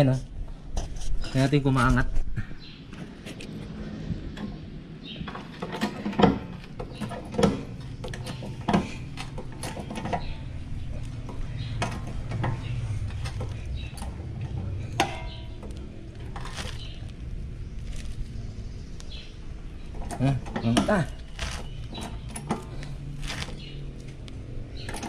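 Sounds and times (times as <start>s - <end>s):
car jack clicks and knocks: 5.2s - 10.3s.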